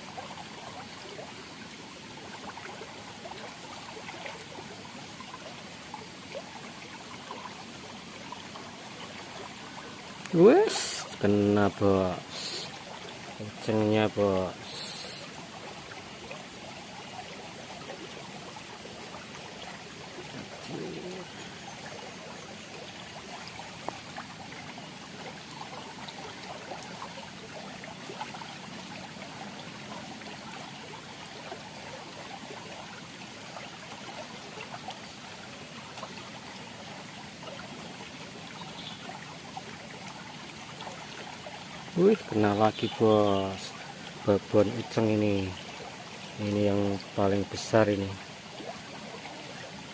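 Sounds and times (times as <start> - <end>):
water trickling in channel: 0.0 - 49.9.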